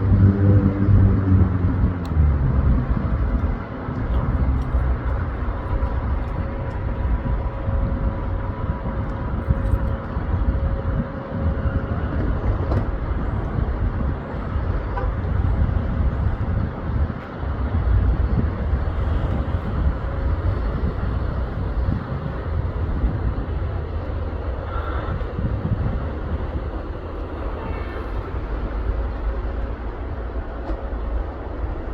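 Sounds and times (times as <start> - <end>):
jet engine cabin rumble: 0.0 - 31.9.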